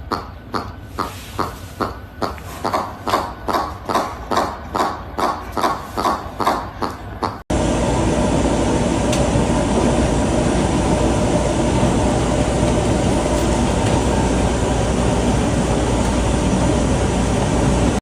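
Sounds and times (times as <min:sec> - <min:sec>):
loud rumbling with deep hum: 0:07.5 - 0:18.0.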